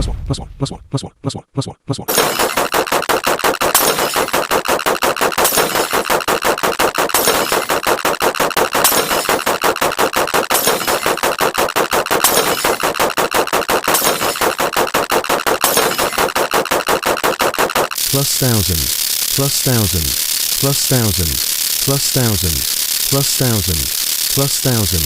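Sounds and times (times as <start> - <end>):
rapid rattling sound effect: 2.1 - 25.0.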